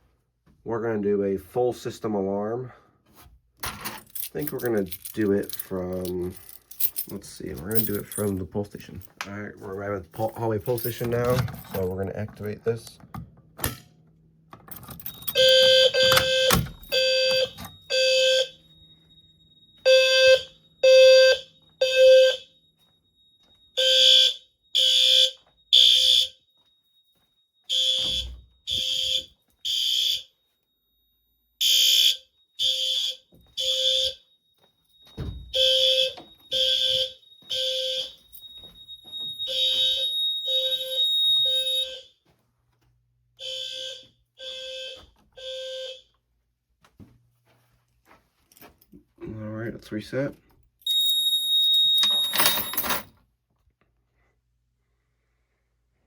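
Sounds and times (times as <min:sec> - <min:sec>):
fire alarm horn blasts: 0:15.2 - 0:42.2, 0:43.4 - 0:46.2, 0:50.8 - 0:52.4.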